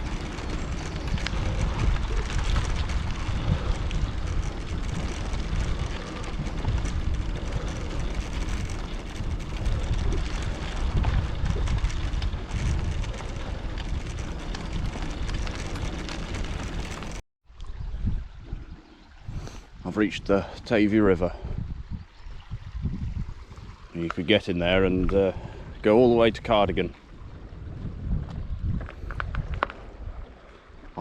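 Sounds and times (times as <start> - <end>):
wind buffeting microphone: 0.0 - 30.5.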